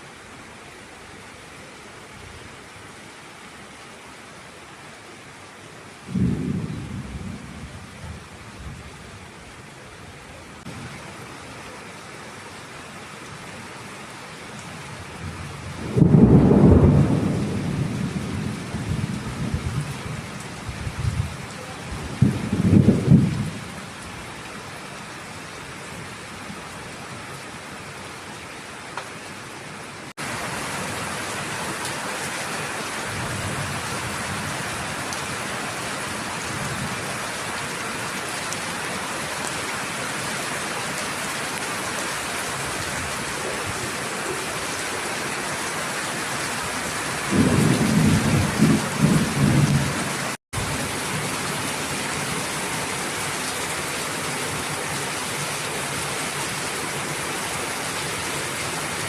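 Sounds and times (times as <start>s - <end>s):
heavy rain pouring: 0.0s - 59.0s
thunder rumbling: 6.1s - 8.8s, 15.2s - 23.7s, 47.2s - 51.3s.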